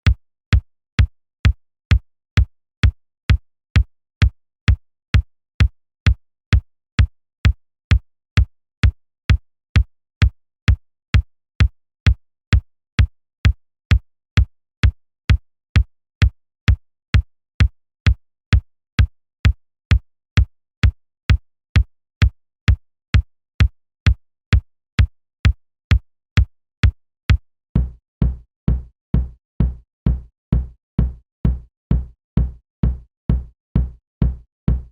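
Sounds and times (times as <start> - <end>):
deep booming kick drum: 27.8 - 34.9
kick drum thuds: 27.8 - 34.9.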